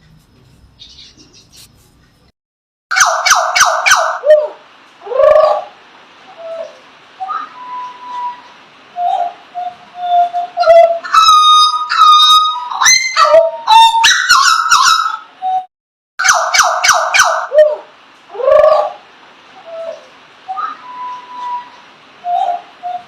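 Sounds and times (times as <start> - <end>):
songbird singing whistles and clicks: 7.3 - 10.8, 20.5 - 23.0.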